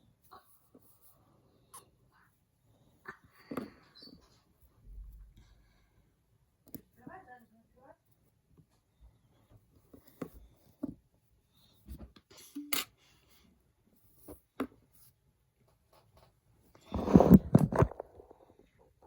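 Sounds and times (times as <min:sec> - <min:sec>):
rustling and knocking: 0:15.8 - 0:18.7.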